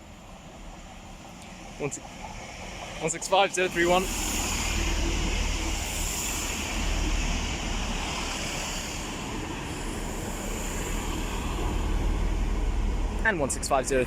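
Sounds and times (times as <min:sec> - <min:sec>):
diesel engines rumbling: 0:00.0 - 0:14.0
train wheels on rails: 0:00.0 - 0:14.0
hiss: 0:03.5 - 0:13.0.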